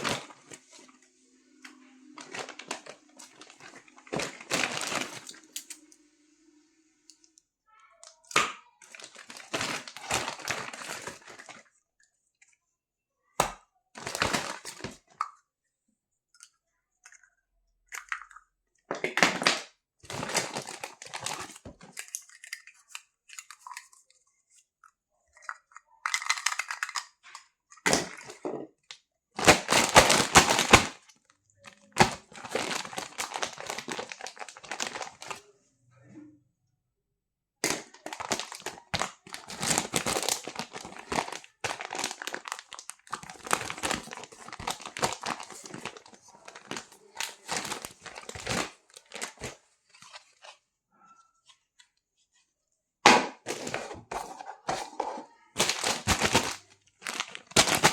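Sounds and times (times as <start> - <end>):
plastic packaging crinkling: 0.0 - 1.0, 1.6 - 5.9, 8.8 - 11.7, 14.0 - 15.1, 19.2 - 24.1, 26.0 - 28.4, 29.4 - 35.4, 37.6 - 50.6, 53.4 - 57.9.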